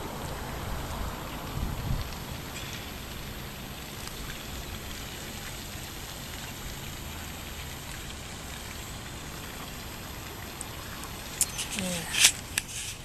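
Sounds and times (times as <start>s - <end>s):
low rumble: 0.0s - 2.6s
outdoor hiss: 0.0s - 13.0s.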